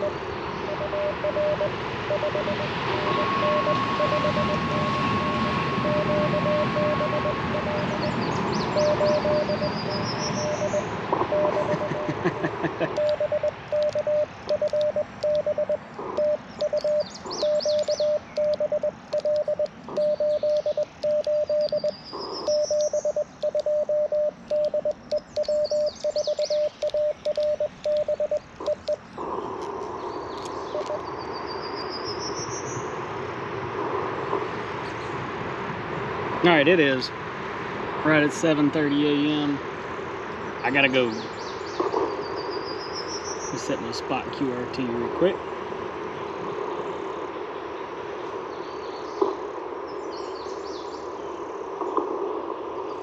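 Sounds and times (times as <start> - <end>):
morse code tone: 0.0 - 29.0
radio receiver hiss: 0.0 - 35.2, 37.9 - 39.7, 40.4 - 50.2.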